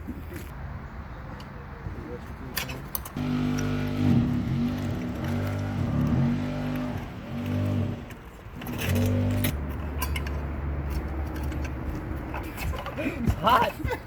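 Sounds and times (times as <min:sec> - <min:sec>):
motor running: 0:03.2 - 0:08.0.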